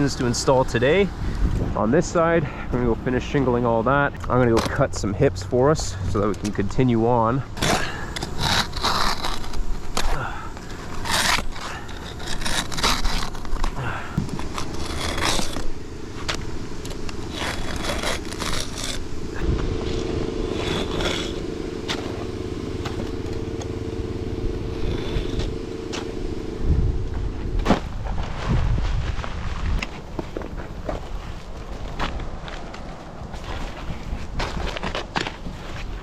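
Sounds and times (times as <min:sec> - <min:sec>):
steady machine hum: 0:00.0 - 0:34.4
shingles scraping and rustling: 0:06.2 - 0:26.2, 0:27.4 - 0:36.0.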